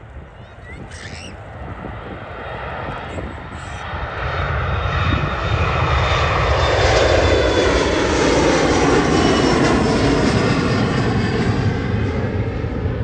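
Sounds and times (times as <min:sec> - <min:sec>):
wind rumble on microphone: 0:00.0 - 0:06.8
airliner engines roaring past: 0:00.0 - 0:13.0.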